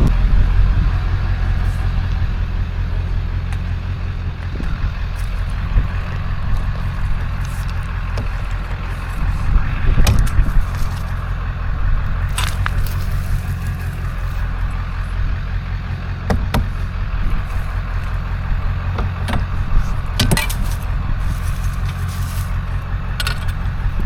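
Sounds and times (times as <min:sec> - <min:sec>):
vehicle engine idling: 0:00.0 - 0:24.0.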